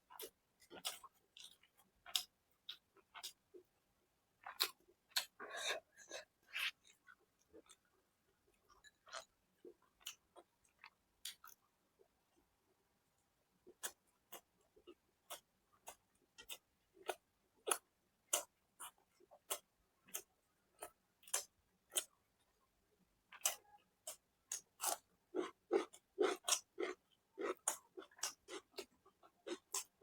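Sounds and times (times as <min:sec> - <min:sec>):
chewing with wet mouth smacks: 0:23.3 - 0:29.9.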